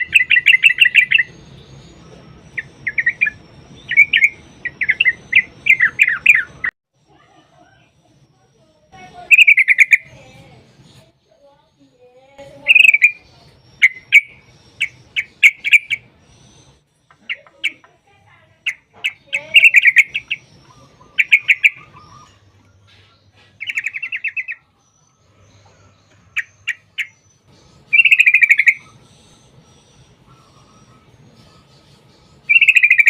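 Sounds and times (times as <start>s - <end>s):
bird rolling trills: 12.4s - 33.0s
bird singing bubbly notes: 23.6s - 33.0s.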